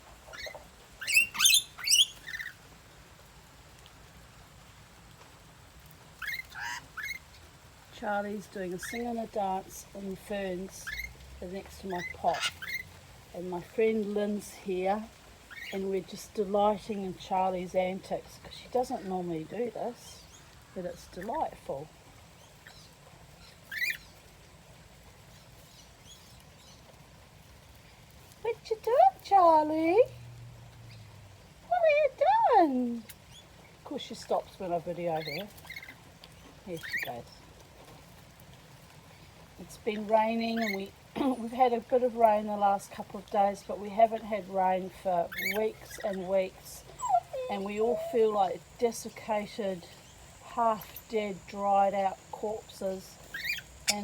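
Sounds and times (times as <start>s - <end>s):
bird call: 0.3s - 2.6s, 53.2s - 54.0s
pet bird calling: 0.3s - 2.6s, 22.6s - 24.0s, 45.3s - 48.7s, 53.2s - 54.0s.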